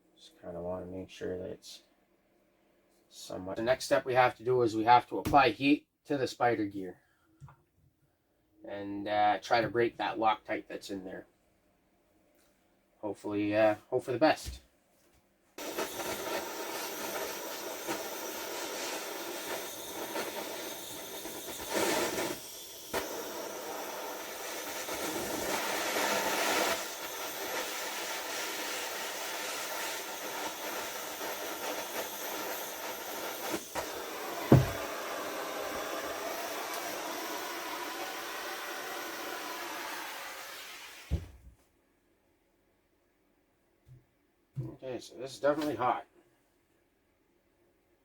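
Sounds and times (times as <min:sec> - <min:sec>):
gas torch flame hissing: 0:15.6 - 0:41.3.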